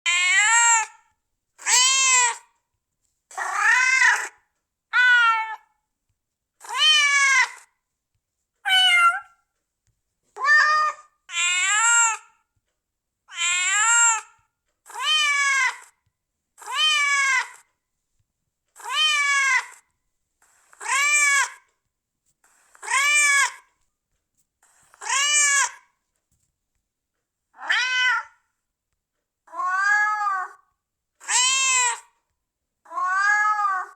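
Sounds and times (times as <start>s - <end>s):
cat meowing: 0.1s - 1.0s, 1.6s - 2.4s, 3.3s - 5.7s, 6.6s - 7.7s, 8.7s - 9.4s, 10.4s - 12.3s, 13.3s - 14.3s, 14.9s - 15.9s, 16.6s - 17.6s, 27.6s - 28.4s, 29.5s - 30.6s, 31.2s - 32.1s, 32.9s - 33.9s.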